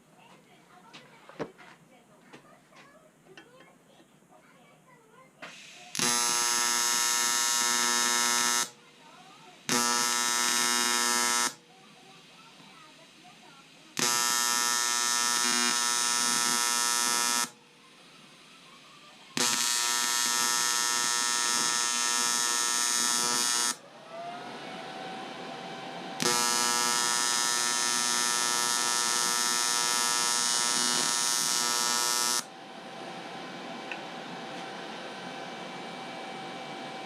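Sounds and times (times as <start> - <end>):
welding arc buzzing: 5.5 - 8.8, 9.6 - 11.6, 13.6 - 17.6, 19.4 - 23.8, 26.1 - 32.6.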